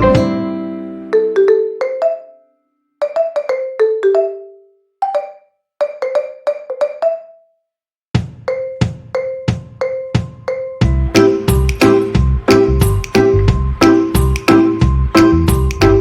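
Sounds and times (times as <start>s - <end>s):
light melody of struck notes: 10.8s - 16.0s
low beat: 10.8s - 16.0s.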